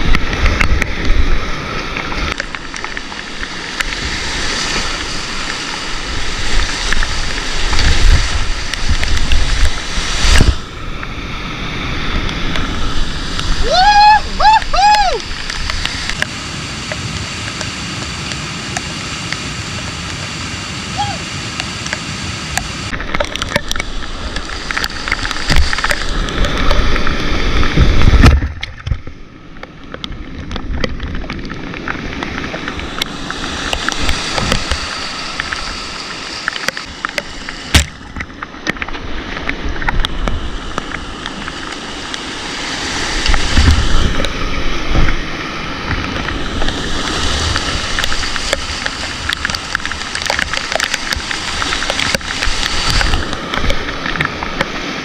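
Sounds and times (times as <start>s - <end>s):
rushing whitewater: 0.0s - 55.0s.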